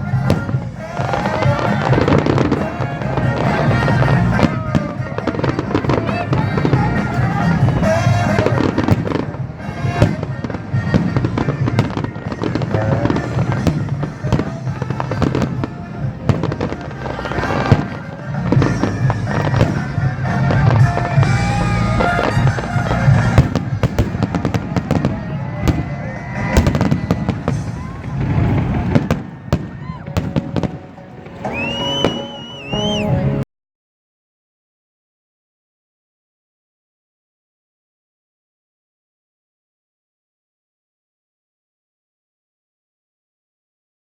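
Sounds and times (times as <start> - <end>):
fireworks bangs and crackles: 0.0 - 33.0
music playing: 0.0 - 33.4.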